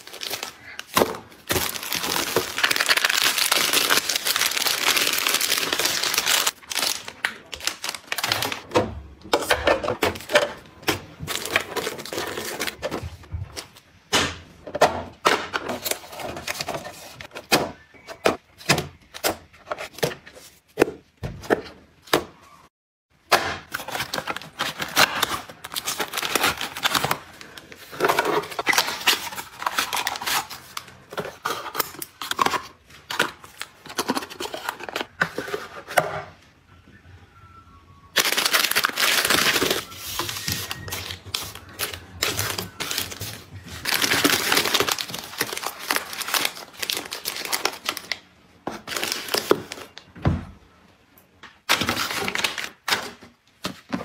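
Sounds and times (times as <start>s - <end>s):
packaging rustling: 0.0s - 8.7s, 10.0s - 13.8s, 23.7s - 36.0s, 38.1s - 50.0s, 51.7s - 54.0s.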